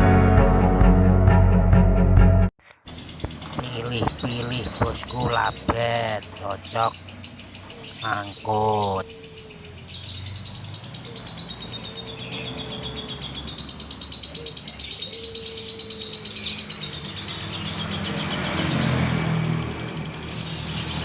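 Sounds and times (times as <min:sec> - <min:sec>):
lovebird chattering: 0:02.9 - 0:11.0.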